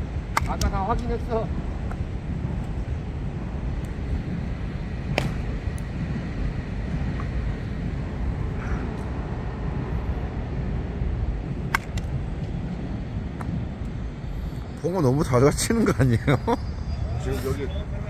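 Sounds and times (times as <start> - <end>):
wind buffeting microphone: 0.0 - 18.0
baseball cracks: 5.1 - 5.5, 11.7 - 12.1.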